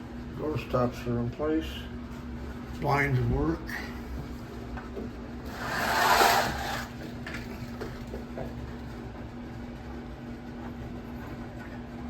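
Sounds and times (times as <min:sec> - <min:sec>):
window blinds rattling: 0:05.5 - 0:07.0.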